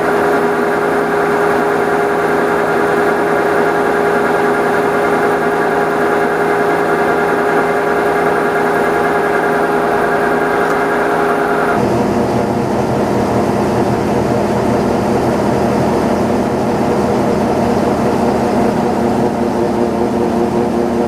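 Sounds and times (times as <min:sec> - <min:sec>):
combine harvester engine drone: 0:00.0 - 0:11.9.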